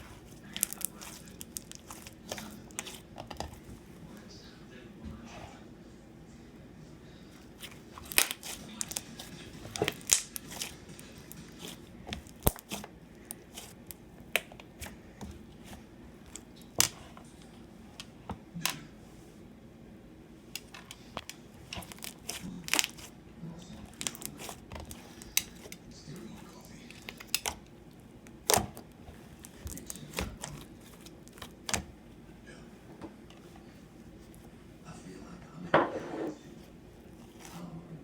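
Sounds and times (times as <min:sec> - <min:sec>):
slime squishing with pops and clicks: 0:07.5 - 0:17.2, 0:20.6 - 0:23.1, 0:23.8 - 0:25.8, 0:26.9 - 0:31.9.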